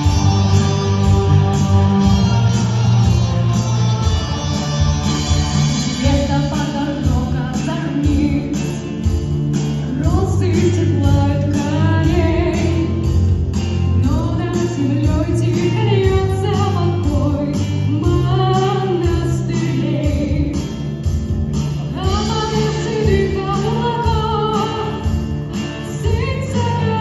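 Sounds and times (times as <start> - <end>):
drum beat: 0.0 - 6.3, 20.1 - 25.6
bass guitar: 0.0 - 27.0
person singing lead vocal: 6.0 - 9.0, 9.9 - 13.2, 21.9 - 25.2.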